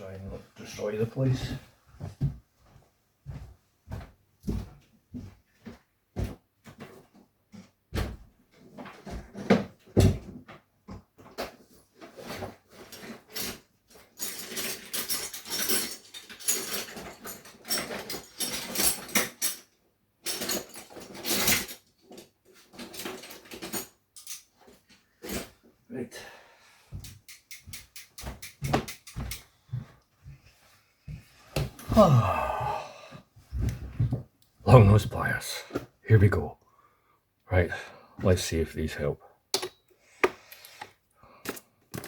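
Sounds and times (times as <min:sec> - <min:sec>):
tools clattering in toolbox: 0:11.2 - 0:25.6, 0:39.6 - 0:42.0.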